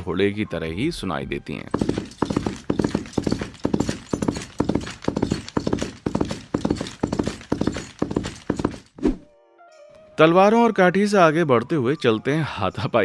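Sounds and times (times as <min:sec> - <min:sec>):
galloping hoofbeats: 0:01.6 - 0:09.0
rattling chains and armour: 0:01.6 - 0:09.0.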